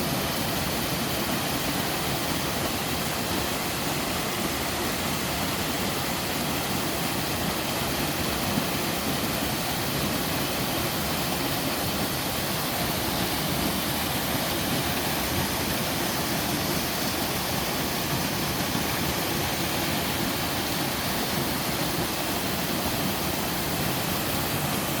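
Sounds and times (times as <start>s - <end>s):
waterfall pouring: 0.0s - 25.0s.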